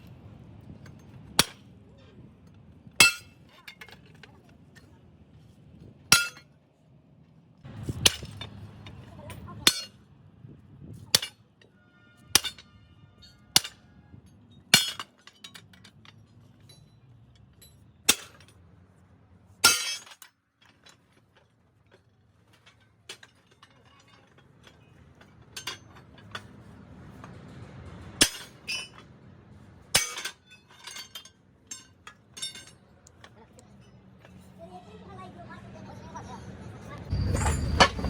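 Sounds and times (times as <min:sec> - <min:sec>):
metallic clanks of steel parts: 0:00.6 - 0:04.9, 0:06.1 - 0:06.6, 0:07.8 - 0:10.0, 0:11.0 - 0:18.6, 0:19.6 - 0:34.6, 0:37.0 - 0:38.0.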